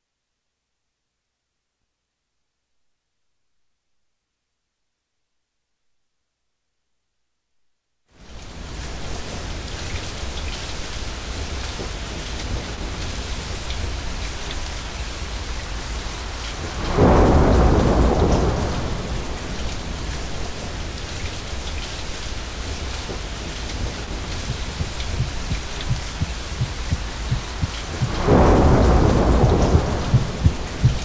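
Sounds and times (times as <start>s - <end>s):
steady rain falling: 8.1s - 31.0s
thunder rolling: 16.7s - 20.8s, 23.8s - 31.0s
water drips: 24.3s - 28.3s.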